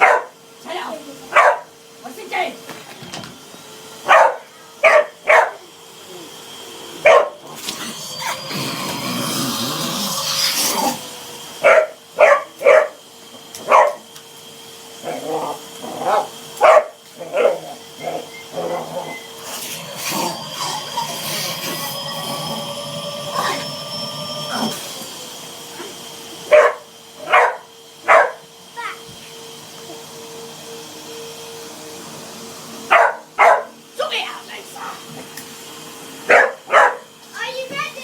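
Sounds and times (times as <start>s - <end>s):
dog barking: 0.0s - 0.4s, 1.3s - 1.7s, 4.0s - 5.6s, 7.0s - 7.4s, 11.6s - 13.0s, 13.6s - 14.0s, 16.1s - 17.6s, 26.5s - 28.4s, 32.9s - 33.8s, 36.3s - 37.1s
vacuum cleaner running: 0.0s - 38.0s
rush of noise: 19.4s - 25.4s.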